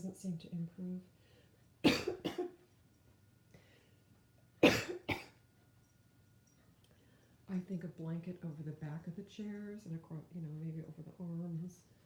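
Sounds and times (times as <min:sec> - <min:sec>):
person coughing: 0:01.8 - 0:02.6, 0:04.6 - 0:05.4.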